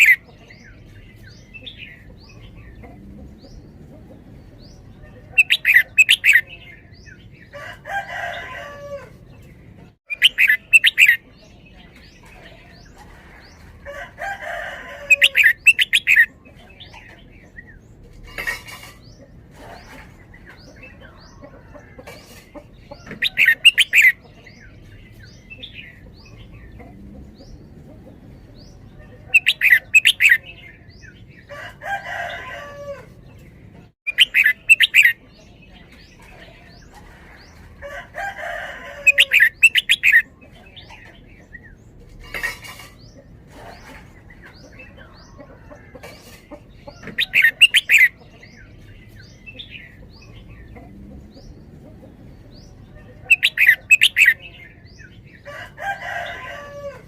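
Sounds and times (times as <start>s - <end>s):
bird singing quick phrases: 10.1s - 11.4s, 34.1s - 35.4s.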